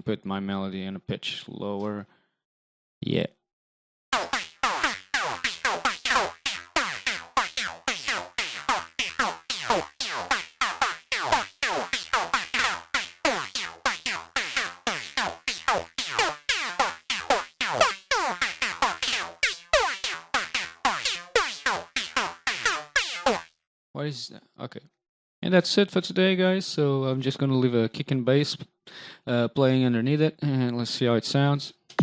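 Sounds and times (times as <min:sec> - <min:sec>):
synthesizer lead with pitch sweeps: 0:04.2 - 0:23.5.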